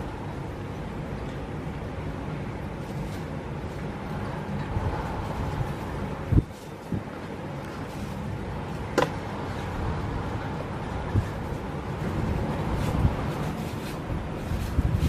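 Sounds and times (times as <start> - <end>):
strong wind blowing: 0.0 - 15.0.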